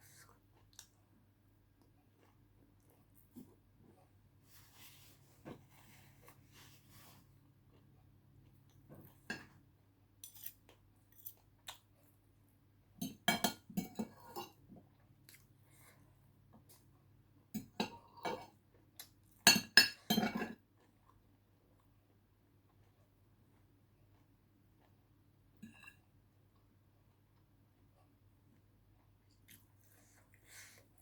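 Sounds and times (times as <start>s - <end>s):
cutlery clinking against a dish: 10.2s - 11.4s, 13.0s - 14.6s, 19.4s - 20.6s.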